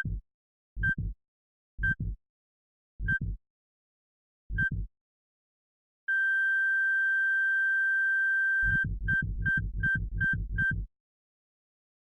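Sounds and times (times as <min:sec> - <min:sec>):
low heartbeat thumps: 0:00.8 - 0:01.2, 0:02.0 - 0:02.2, 0:03.0 - 0:03.4, 0:04.5 - 0:04.9, 0:08.7 - 0:10.9
flatline monitor beep: 0:08.6 - 0:10.9.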